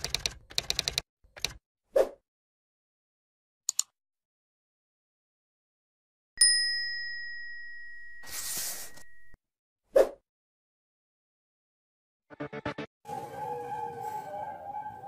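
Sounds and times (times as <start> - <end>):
bell-like ding ringing: 6.4 - 8.2.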